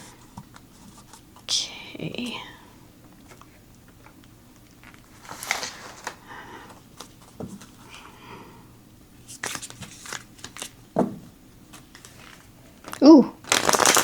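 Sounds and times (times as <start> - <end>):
cards riffling and tapping: 9.3 - 10.8, 11.7 - 14.0.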